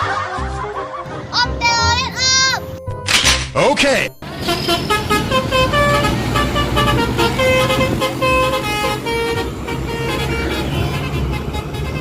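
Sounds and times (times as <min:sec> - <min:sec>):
bus horn playing a tune: 0:04.2 - 0:12.0.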